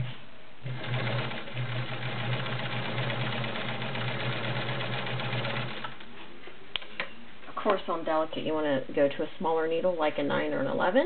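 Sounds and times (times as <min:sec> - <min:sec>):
sewing machine stitching: 0:00.0 - 0:06.0.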